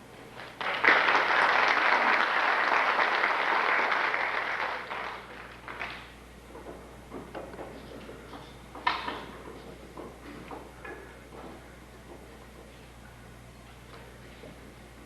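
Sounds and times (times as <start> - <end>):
audience applauding: 0.5 - 6.1.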